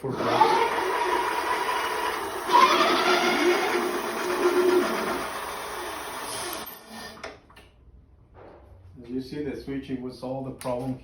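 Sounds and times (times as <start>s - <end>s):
electric bike motors whining: 0.0s - 7.2s.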